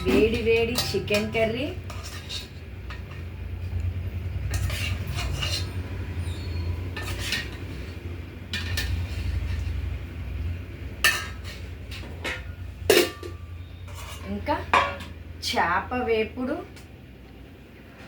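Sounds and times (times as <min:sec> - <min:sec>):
spoon and dishes clinking: 0:00.0 - 0:03.3, 0:06.9 - 0:07.8, 0:11.0 - 0:15.2.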